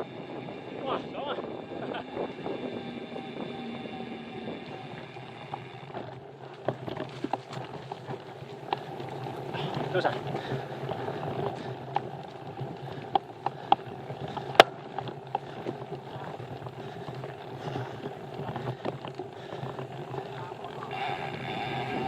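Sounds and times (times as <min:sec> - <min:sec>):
bike tyre and drivetrain noise: 0:00.0 - 0:22.0
bike knocks and rattles: 0:05.5 - 0:10.6.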